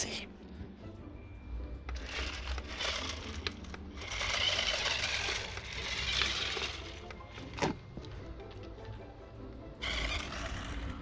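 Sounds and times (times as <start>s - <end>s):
toy car motor whirring: 1.9s - 8.2s, 9.8s - 11.0s.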